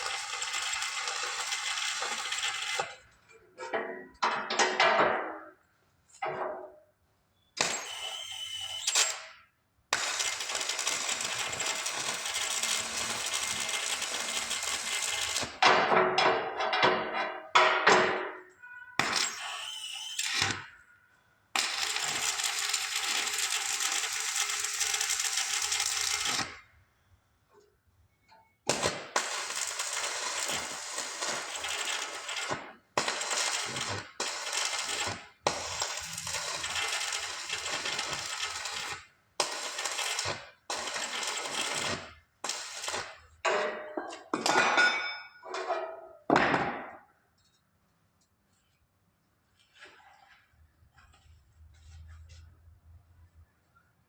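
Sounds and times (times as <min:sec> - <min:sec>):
welding arc crackling: 0:00.0 - 0:02.8, 0:10.0 - 0:15.6, 0:21.6 - 0:26.6, 0:28.7 - 0:43.2.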